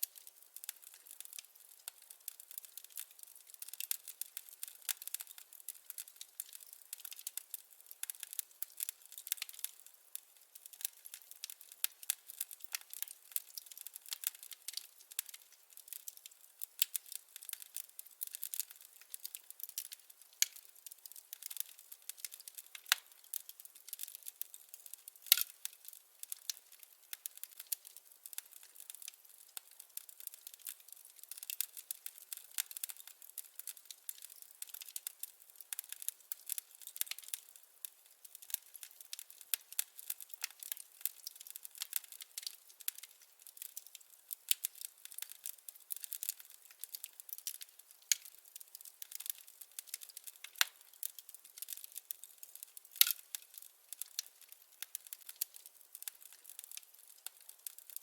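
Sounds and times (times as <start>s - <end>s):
firewood crackling: 0.0s - 58.0s.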